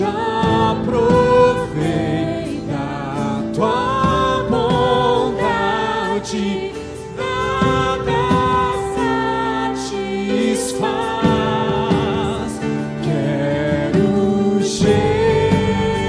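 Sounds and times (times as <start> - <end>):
instrumental backing: 0.0 - 16.0
voices singing together: 0.0 - 16.0.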